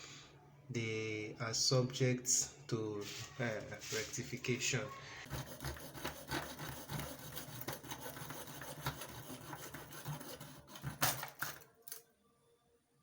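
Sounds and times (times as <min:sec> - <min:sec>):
hand tool scraping: 0:05.2 - 0:11.6.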